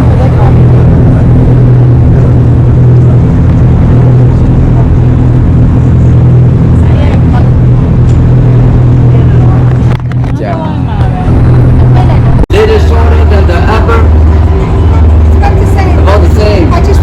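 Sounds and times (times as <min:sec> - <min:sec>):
boat engine humming: 0:00.0 - 0:17.0.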